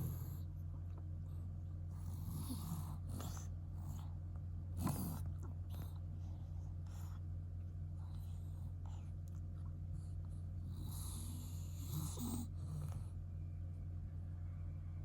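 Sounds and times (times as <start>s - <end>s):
cat snoring: 0.0s - 0.5s, 1.9s - 4.1s, 4.8s - 6.0s, 10.6s - 13.1s
steady low hum: 0.0s - 15.0s.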